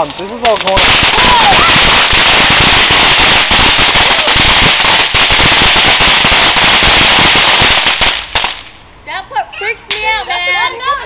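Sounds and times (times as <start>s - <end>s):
firecrackers rapid crackle: 0.0s - 8.8s.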